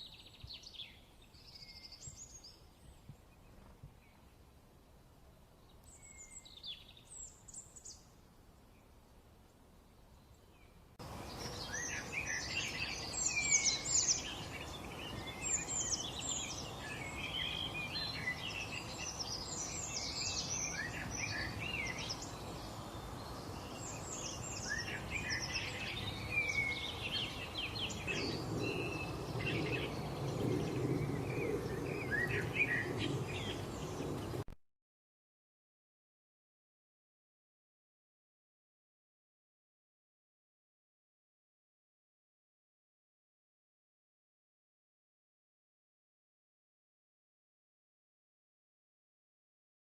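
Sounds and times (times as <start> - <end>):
small birds chirping: 0.0 - 4.6, 5.3 - 34.6.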